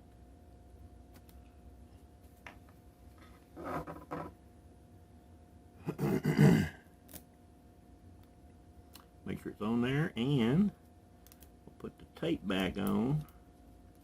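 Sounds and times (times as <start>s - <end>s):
handling and scraping noise: 2.2s - 4.4s.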